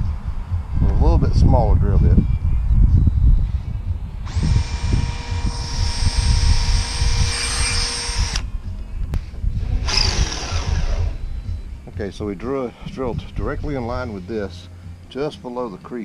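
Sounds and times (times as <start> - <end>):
power drill boring into metal tube: 4.3 - 8.5, 9.8 - 11.2.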